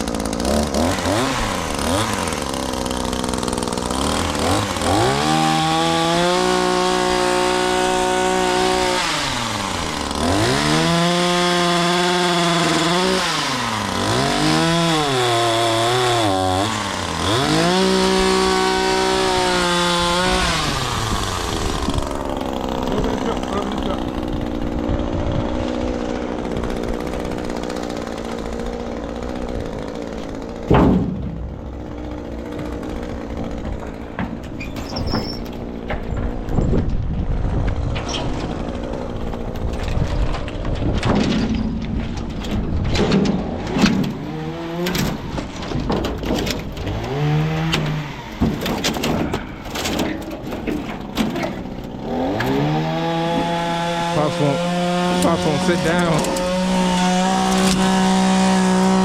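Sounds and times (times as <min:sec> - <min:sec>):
chainsaw engine idling and revving: 0:00.0 - 0:59.0
knocks and rattles: 0:28.7 - 0:54.0
loud thump: 0:30.7 - 0:31.8.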